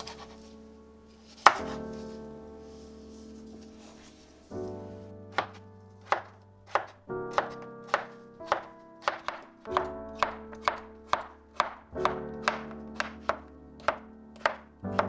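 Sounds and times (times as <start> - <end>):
soft background music: 0.0 - 15.0
knife chopping on cutting board: 1.4 - 1.8, 5.3 - 15.0.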